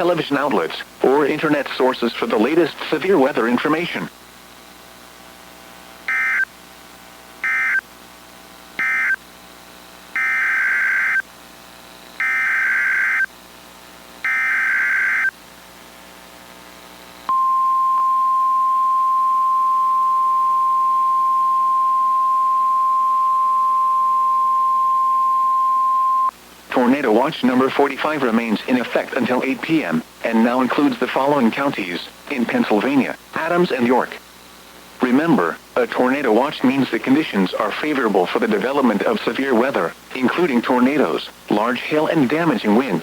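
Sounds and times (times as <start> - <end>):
digital data bursts: 14.2 - 15.3.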